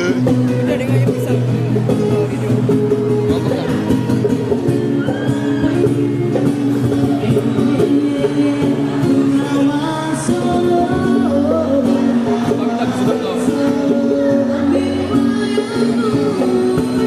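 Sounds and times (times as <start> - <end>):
live band music: 0.0 - 17.0
person singing: 4.9 - 17.0.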